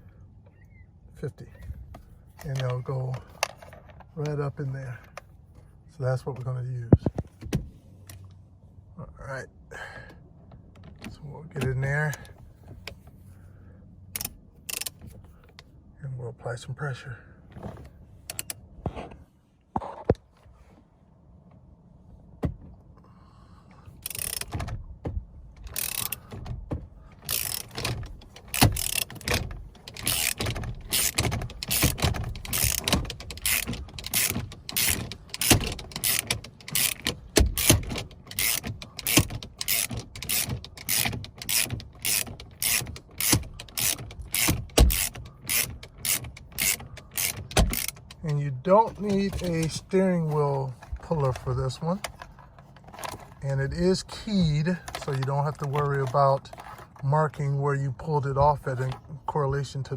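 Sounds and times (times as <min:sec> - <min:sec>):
hand ratchet clicking: 0:14.2 - 0:15.0, 0:24.0 - 0:24.6, 0:25.6 - 0:26.4, 0:27.2 - 0:57.0.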